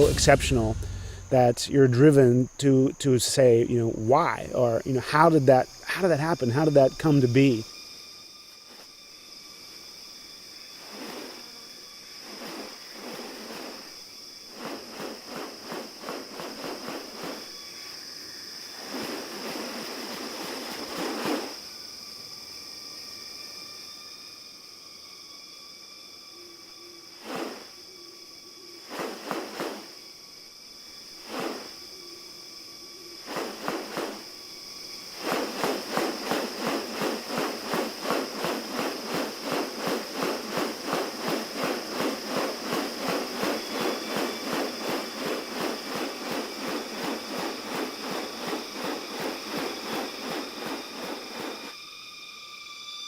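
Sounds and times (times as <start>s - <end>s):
rapid harsh pulses: 0.0s - 1.8s, 28.9s - 29.9s, 33.2s - 34.3s, 35.1s - 51.7s
high insect drone: 0.0s - 53.0s.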